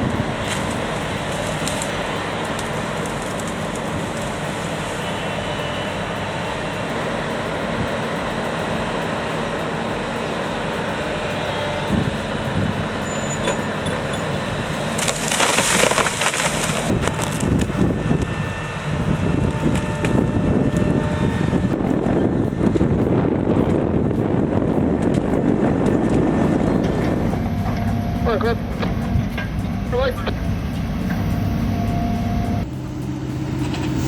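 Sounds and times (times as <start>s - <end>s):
heavy machine engine running: 0.0s - 34.0s
rushing crackling burst: 11.9s - 29.0s.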